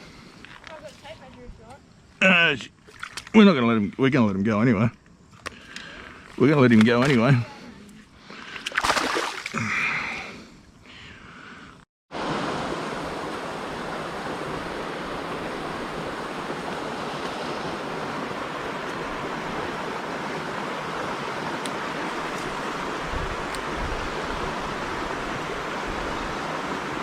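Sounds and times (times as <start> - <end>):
heavy rain hissing: 12.3 - 27.0.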